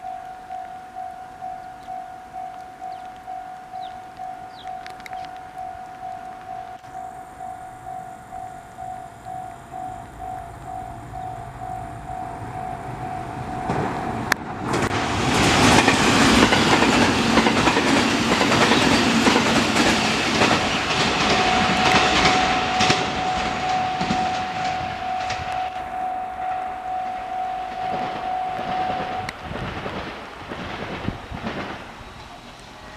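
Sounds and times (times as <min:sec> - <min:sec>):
level crossing warning bell: 0:00.0 - 0:14.8, 0:15.4 - 0:29.4
train passing: 0:00.0 - 0:32.9
wheels clacking over rail joints: 0:07.9 - 0:32.9.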